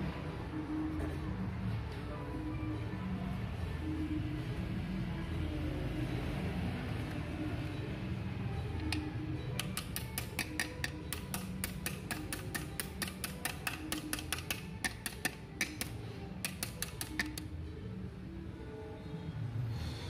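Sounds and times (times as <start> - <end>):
sharp irregular clicks: 9.6 - 17.5.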